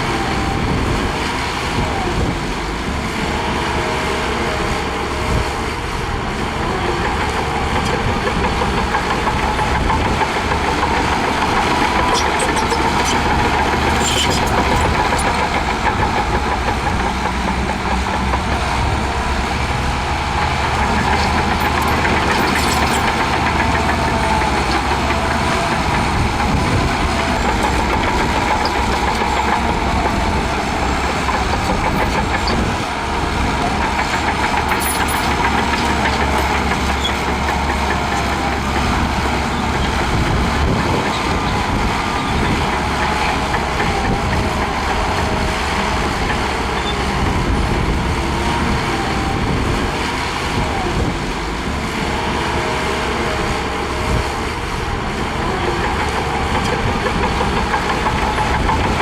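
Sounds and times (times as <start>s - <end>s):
heavy diesel engine running: 0.0s - 59.0s.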